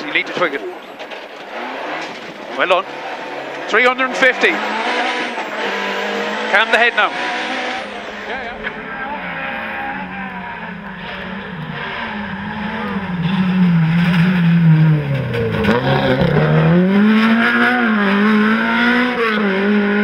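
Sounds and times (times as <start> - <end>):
rally car engine revving: 0.0 - 20.0.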